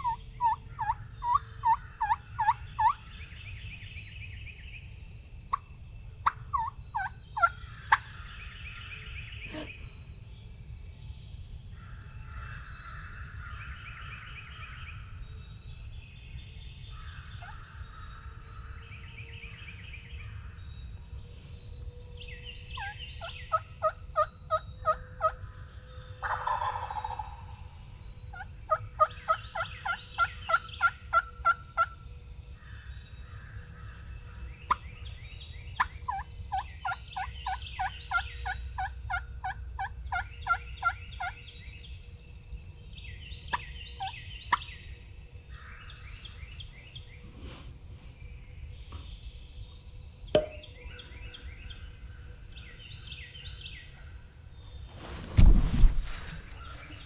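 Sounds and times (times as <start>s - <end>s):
wild turkey yelping: 0.0s - 3.0s, 6.2s - 8.0s, 26.2s - 27.5s
songbirds singing: 0.0s - 57.0s.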